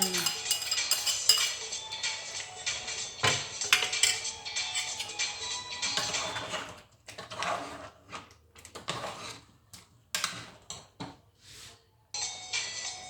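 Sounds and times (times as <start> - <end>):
utensil scraping a pot: 3.8 - 11.9.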